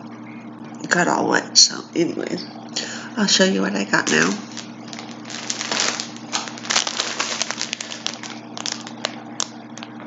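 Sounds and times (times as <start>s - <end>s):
steady low hum: 0.0s - 10.0s
packaging crinkling and rustling: 4.0s - 9.9s.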